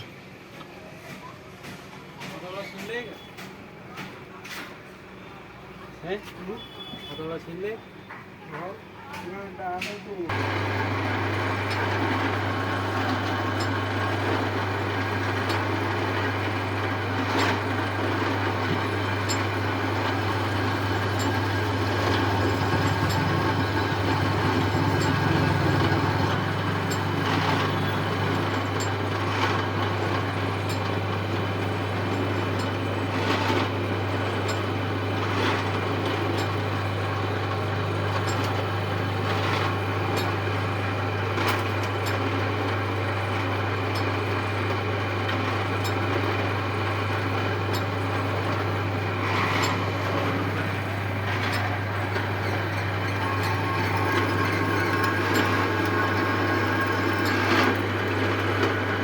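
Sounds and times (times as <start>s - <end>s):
lathe motor humming: 10.3s - 59.0s.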